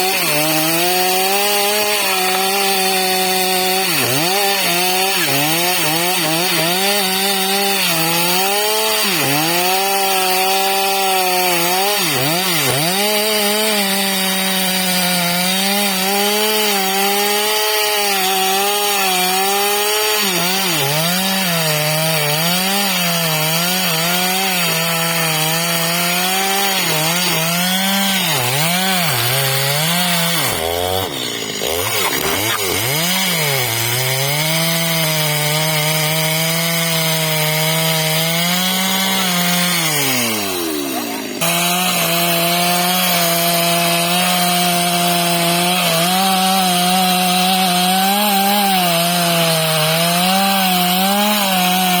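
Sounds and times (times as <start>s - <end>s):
chainsaw cutting wood: 0.0s - 52.0s.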